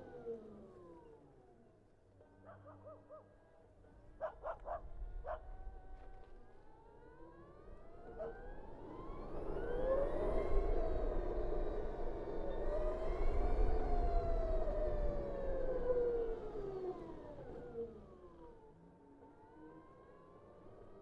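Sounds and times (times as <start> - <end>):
electric scooter motor whine: 5.6 - 21.0.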